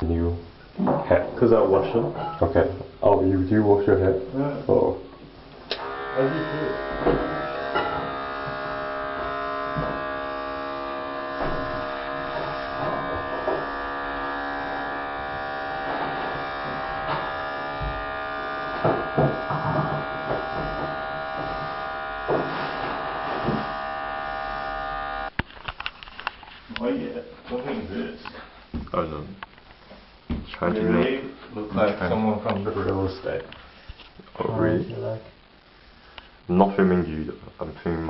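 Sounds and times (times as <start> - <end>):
fabric shaver buzzing: 5.6 - 25.4.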